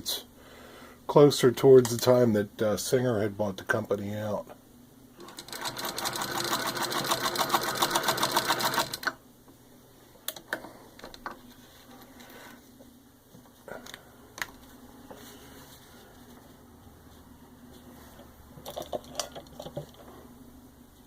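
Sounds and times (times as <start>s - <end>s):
hand-crank sewing machine clicking: 5.2s - 9.2s.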